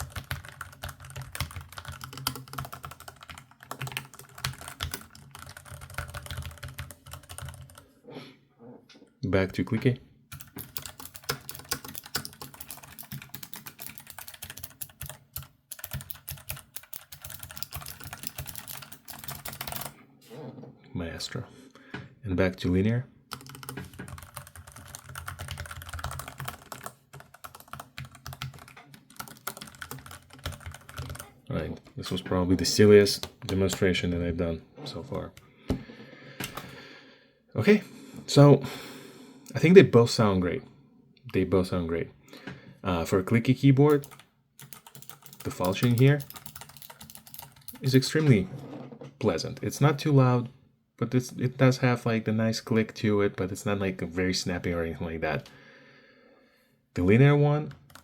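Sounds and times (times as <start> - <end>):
keyboard keystrokes clicking: 10.4 - 19.9, 23.3 - 31.2, 43.9 - 48.0.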